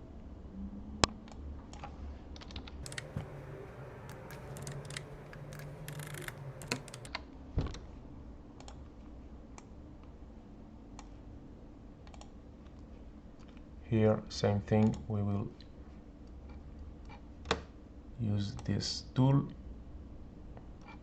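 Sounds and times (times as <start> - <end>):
typing on computer keyboard: 2.8 - 7.1.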